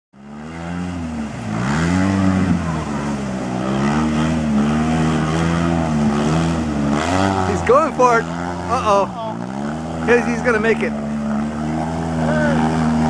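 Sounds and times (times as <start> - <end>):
engine revving: 0.2 - 13.0.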